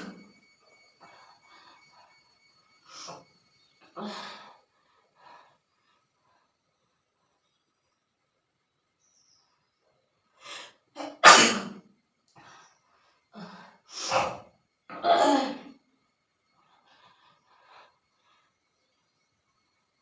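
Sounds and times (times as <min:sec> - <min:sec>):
woman sneezing: 0:14.0 - 0:15.7.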